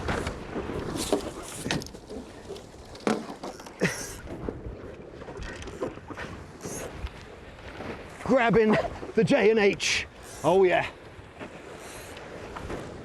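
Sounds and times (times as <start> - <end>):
water noise: 0.0 - 13.0
wind: 0.0 - 13.0
sharp knocks from boat rigging: 2.9 - 3.8.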